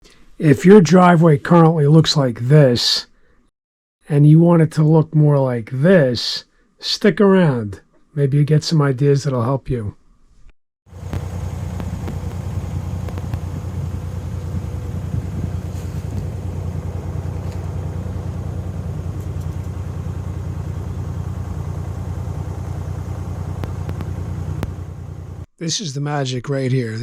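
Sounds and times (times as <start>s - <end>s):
mini excavator engine running: 10.9s - 25.4s
faint clicks: 23.6s - 24.8s.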